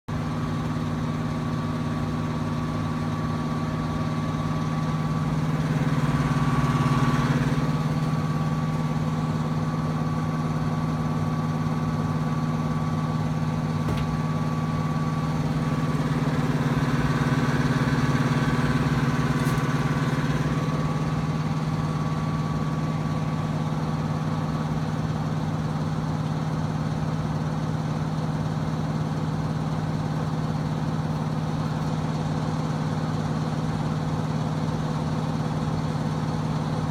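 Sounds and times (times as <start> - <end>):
heating unit humming: 0.1 - 25.6.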